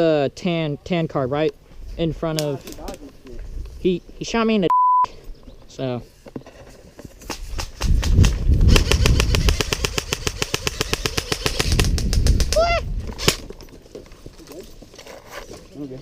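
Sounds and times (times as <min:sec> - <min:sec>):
airsoft gun full-auto firing: 0:08.7 - 0:12.4.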